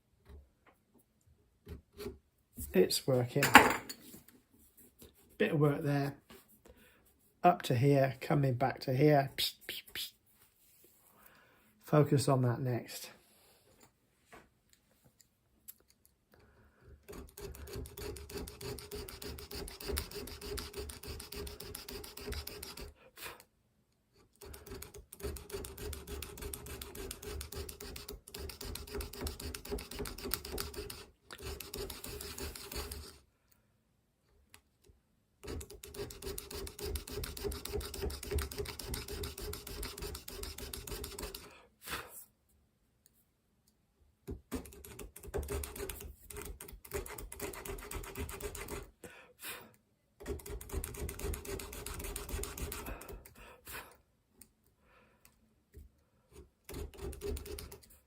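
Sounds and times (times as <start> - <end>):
hand tool rasping on workpiece: 17.0 - 23.0, 24.2 - 33.2, 35.4 - 41.5, 44.5 - 48.9, 50.2 - 53.3, 56.7 - 57.9.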